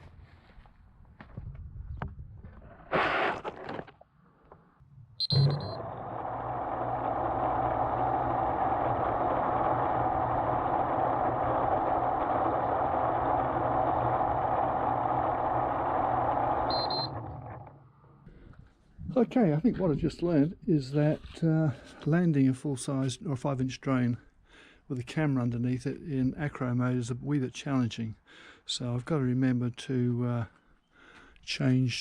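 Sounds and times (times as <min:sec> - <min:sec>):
short high beep: 0:05.2 - 0:05.8, 0:16.7 - 0:17.2
quadcopter propellers whirring: 0:05.4 - 0:17.5.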